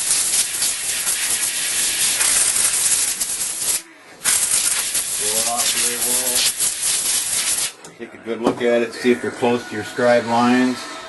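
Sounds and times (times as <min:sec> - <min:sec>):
compressed air blow gun hissing: 0:00.0 - 0:07.8.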